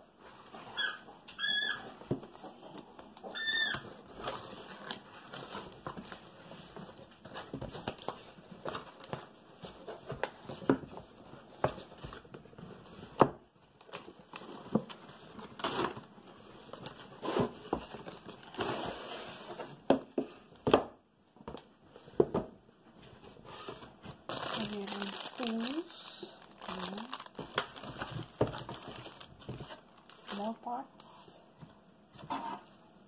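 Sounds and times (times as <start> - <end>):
wrapping crinkling: 3.4 - 10.3, 23.7 - 31.0.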